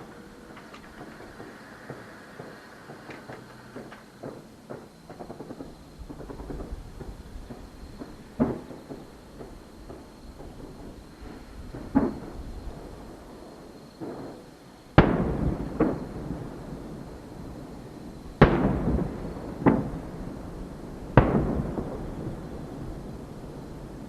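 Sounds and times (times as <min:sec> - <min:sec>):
firework shells booming: 0:00.0 - 0:13.2, 0:14.0 - 0:24.0
quieter firework bang: 0:15.0 - 0:17.1, 0:18.4 - 0:20.4, 0:21.1 - 0:23.6.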